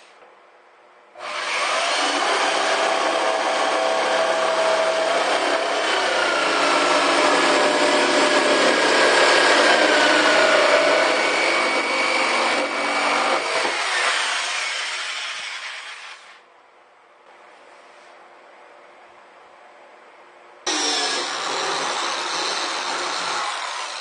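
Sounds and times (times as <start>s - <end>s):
power tool cutting: 1.2s - 16.4s, 20.7s - 24.0s.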